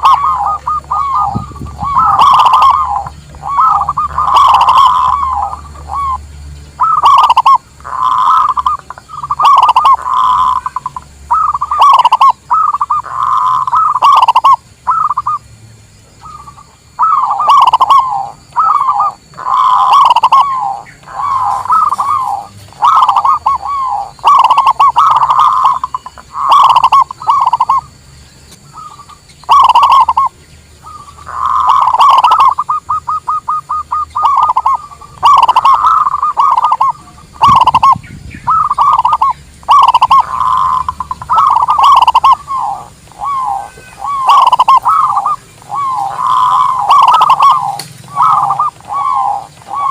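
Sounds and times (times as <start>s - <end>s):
doves cooing: 0.0s - 15.5s, 16.2s - 49.9s.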